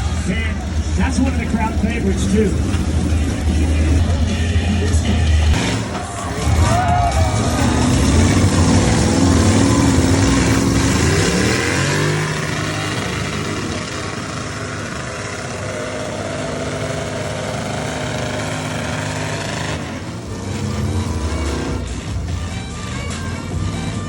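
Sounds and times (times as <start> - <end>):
truck engine revving: 0.0 - 24.0.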